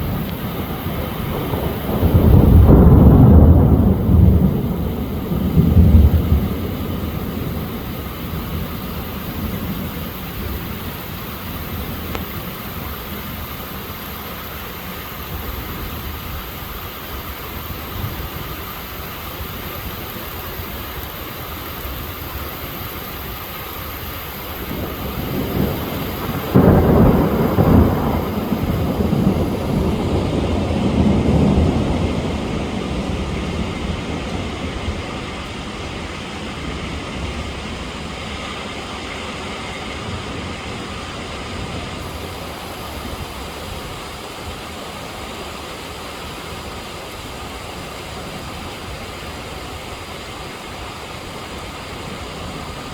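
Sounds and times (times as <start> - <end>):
rolling thunder: 0.0 - 13.6, 24.3 - 35.4
steady rain falling: 0.0 - 52.9.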